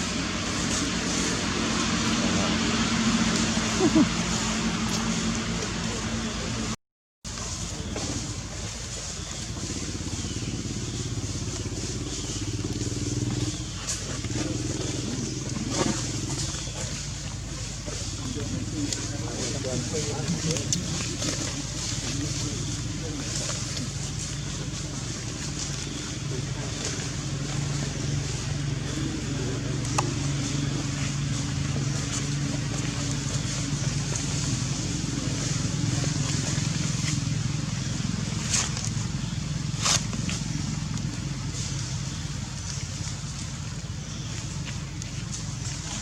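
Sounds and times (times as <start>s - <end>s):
engine running: 0.0s - 46.0s
motor hum: 0.0s - 46.0s.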